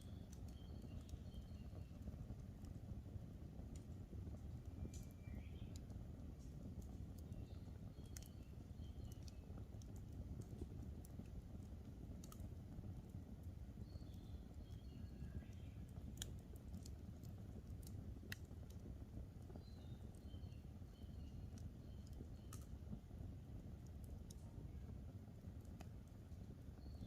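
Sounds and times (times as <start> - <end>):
faint bird chirps: 0.0 - 2.6, 4.7 - 10.7, 13.7 - 16.9, 19.5 - 23.0, 25.8 - 27.0
campfire crackling and popping: 0.0 - 27.0
low rumble of burning: 0.0 - 27.0.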